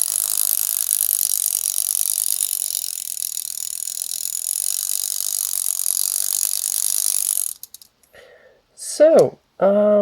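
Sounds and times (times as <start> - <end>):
alarm clock hammer buzzing: 0.0 - 7.6.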